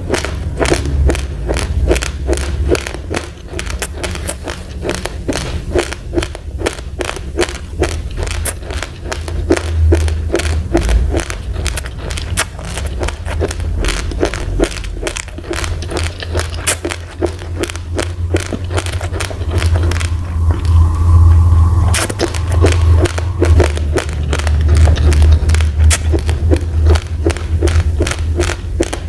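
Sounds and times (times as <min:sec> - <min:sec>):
person chewing crunchy rice: 0:00.0 - 0:29.0.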